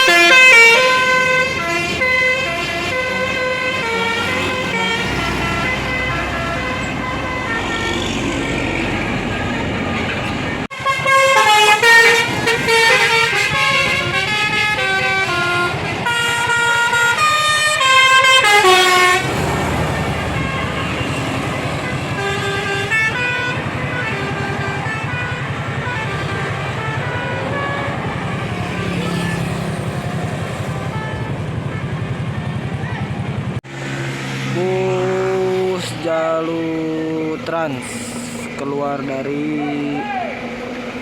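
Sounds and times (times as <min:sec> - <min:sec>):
musical bus horn tune: 0:00.0 - 0:32.6
bus engine running: 0:00.0 - 0:41.0.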